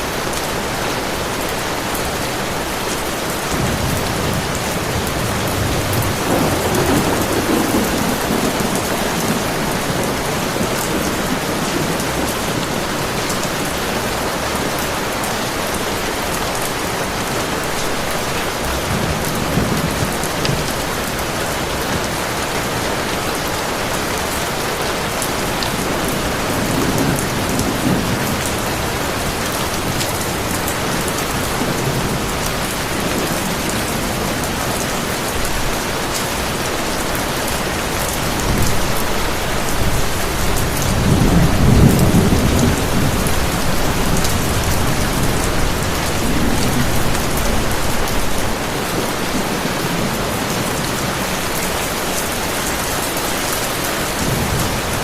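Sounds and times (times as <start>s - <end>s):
heavy rain: 0.0s - 55.0s
thunder rolling: 3.4s - 14.3s, 25.4s - 51.8s.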